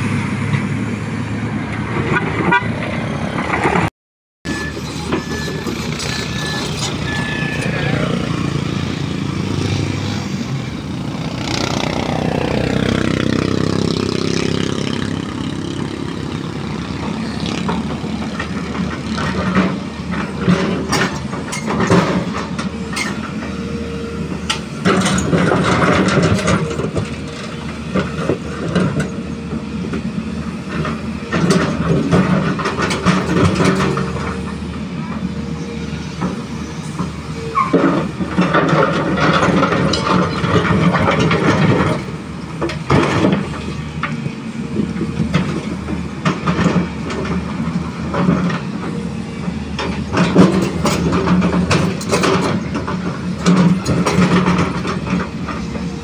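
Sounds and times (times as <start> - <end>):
heavy diesel engines running: 0.0 - 3.9, 4.5 - 56.0
vehicle passing by: 7.4 - 18.1
sharp metal knocks and clanks: 37.0 - 44.2, 49.8 - 55.7.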